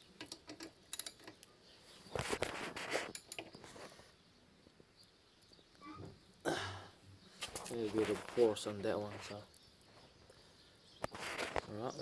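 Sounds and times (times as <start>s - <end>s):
metal tools clinking: 0.3s - 1.4s, 3.0s - 3.6s.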